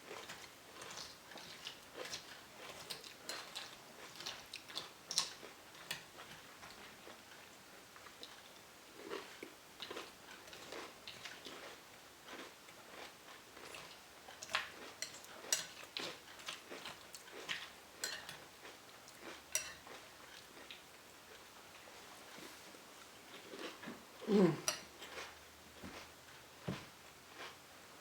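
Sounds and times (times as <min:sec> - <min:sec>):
person chewing crunchy cereal: 0:23.3 - 0:26.1.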